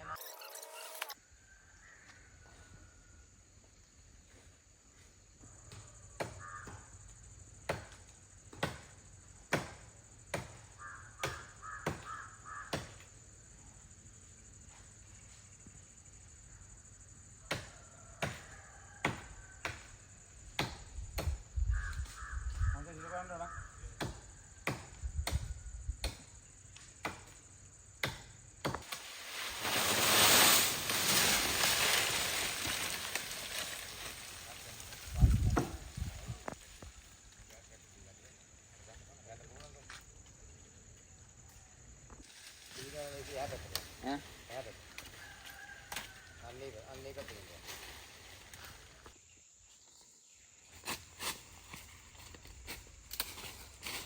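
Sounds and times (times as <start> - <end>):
crow cawing: 6.3 - 6.9, 10.8 - 12.8, 21.8 - 23.8
chopping strikes on wood: 7.7 - 8.9, 9.5 - 10.6, 11.2 - 12.1, 19.0 - 19.9, 20.6 - 21.4, 24.0 - 26.3, 27.0 - 27.4, 28.0 - 28.9
rustling rush of tree branches: 28.8 - 36.9, 47.4 - 49.0.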